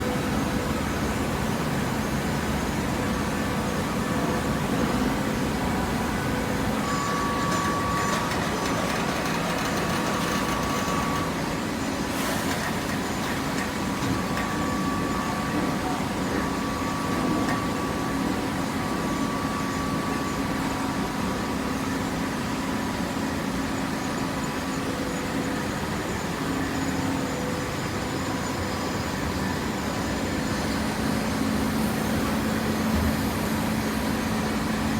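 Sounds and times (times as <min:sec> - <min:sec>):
hydraulic baler humming: 0:00.0 - 0:21.9, 0:25.0 - 0:34.9.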